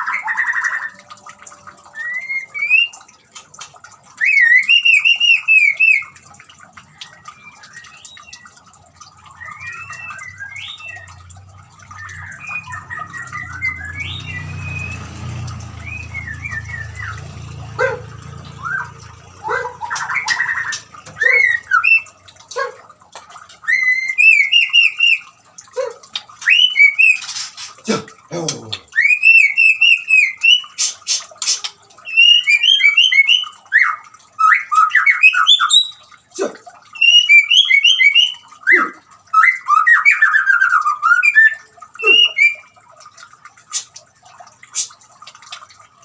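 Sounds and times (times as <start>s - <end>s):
trickling water: 0.0s - 46.0s
bird singing whistled phrases: 1.9s - 3.0s, 4.2s - 6.1s, 7.1s - 8.6s, 9.3s - 11.2s, 11.9s - 15.0s, 18.6s - 22.2s, 23.6s - 25.3s, 26.4s - 27.2s, 28.9s - 30.8s, 32.0s - 36.0s, 37.0s - 42.7s.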